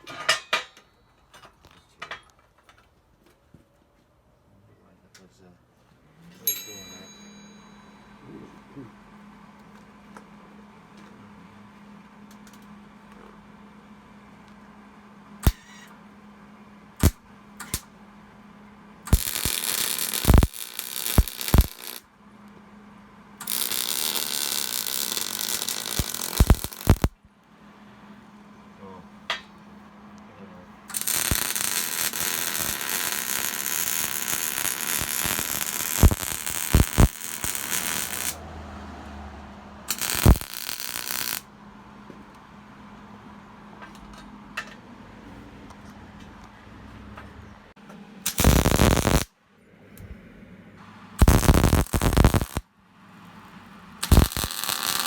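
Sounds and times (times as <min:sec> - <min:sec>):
welder arc crackling: 0:17.0 - 0:17.8, 0:19.1 - 0:22.0, 0:23.4 - 0:27.2, 0:30.9 - 0:38.4, 0:39.9 - 0:41.5, 0:48.2 - 0:49.3, 0:51.2 - 0:52.6, 0:54.0 - 0:55.0
faint steady hum: 0:47.9 - 0:55.0.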